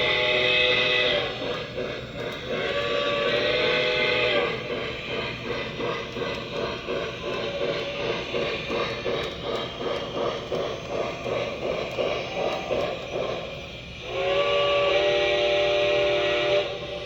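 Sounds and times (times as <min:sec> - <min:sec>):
chime steam whistle: 0:00.0 - 0:05.4, 0:13.9 - 0:17.0
steam chuffing from speaker: 0:00.0 - 0:17.0.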